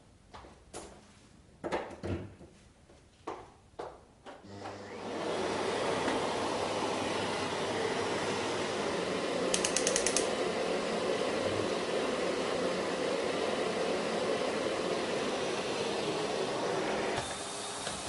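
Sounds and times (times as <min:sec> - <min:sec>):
vacuum cleaner running: 0:04.4 - 0:18.0
sharp clicks: 0:09.5 - 0:10.3.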